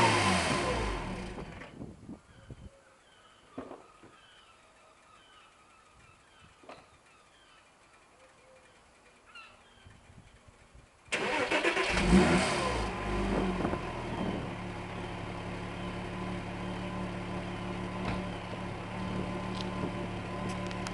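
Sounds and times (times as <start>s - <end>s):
car engine starting and idling: 0.0s - 1.8s, 10.9s - 20.9s
faint bird chirps: 2.2s - 10.6s, 14.0s - 19.3s.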